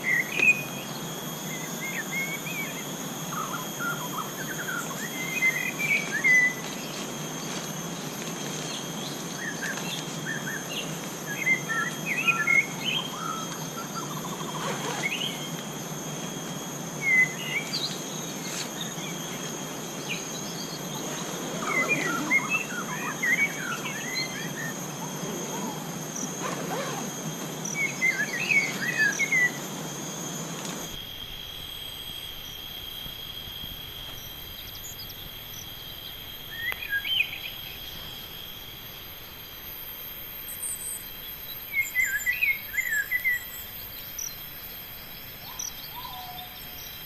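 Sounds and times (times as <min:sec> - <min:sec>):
high-pitched insect drone: 0:00.0 - 0:47.0.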